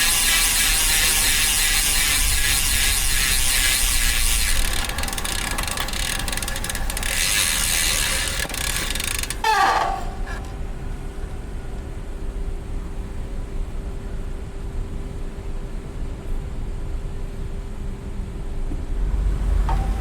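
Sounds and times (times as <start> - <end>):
bicycle freehub buzzing: 0.0 - 11.2.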